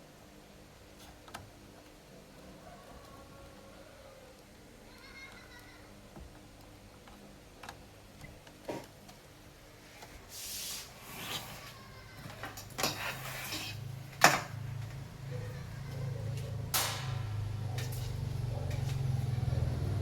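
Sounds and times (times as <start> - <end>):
tools clicking and scraping: 11.2 - 14.5.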